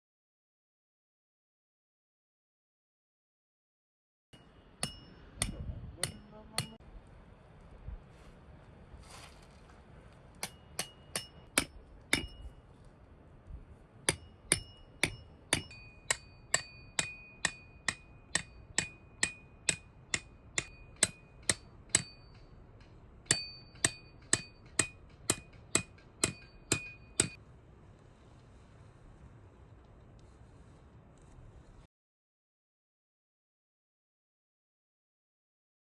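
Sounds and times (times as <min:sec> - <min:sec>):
hammer striking metal tent peg: 0:04.4 - 0:06.8, 0:10.4 - 0:12.6, 0:14.0 - 0:27.4.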